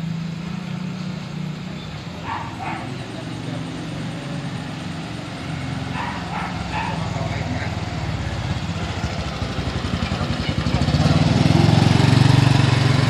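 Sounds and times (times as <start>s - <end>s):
passing vehicle engine: 0.0s - 13.0s
dog barking: 2.2s - 3.0s, 5.9s - 7.3s.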